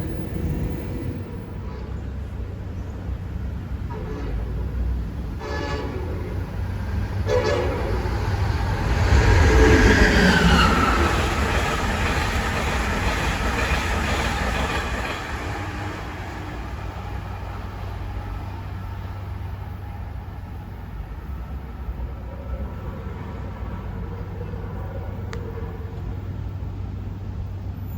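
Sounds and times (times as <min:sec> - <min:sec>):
train passing at speed: 0:00.0 - 0:27.9
train horn blasts: 0:03.9 - 0:08.9.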